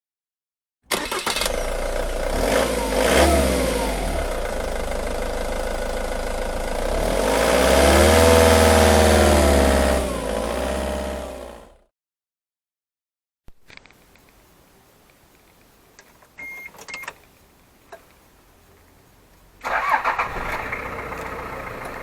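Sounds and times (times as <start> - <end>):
vehicle engine revving: 0.9 - 11.8, 19.6 - 22.0.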